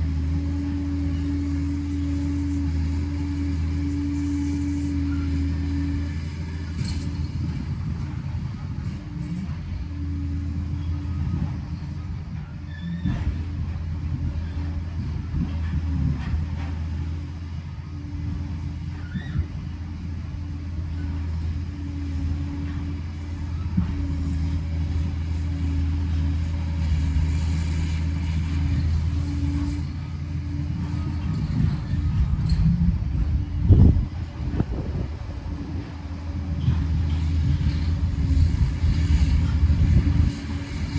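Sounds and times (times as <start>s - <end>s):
diesel engine humming: 0.0s - 40.9s.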